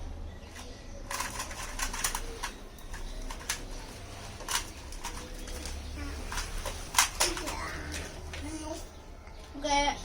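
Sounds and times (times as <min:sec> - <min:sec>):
puzzle cube clicking: 0:01.1 - 0:03.7.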